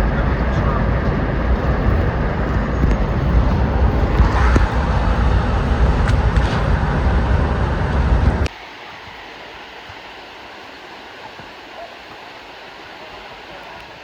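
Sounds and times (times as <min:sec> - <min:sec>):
vehicle road noise rumbling: 0:00.0 - 0:08.5.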